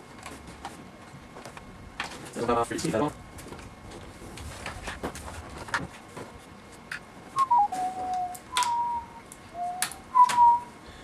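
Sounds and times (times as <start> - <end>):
person whistling: 7.4 - 10.8
clicks from laptop parts: 8.2 - 8.8.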